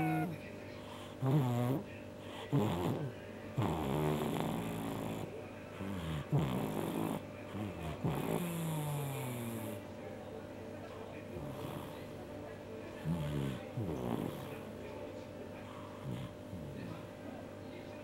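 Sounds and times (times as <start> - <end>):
pet snoring: 0.0 - 9.8, 11.4 - 12.1, 13.0 - 14.7, 15.6 - 17.0.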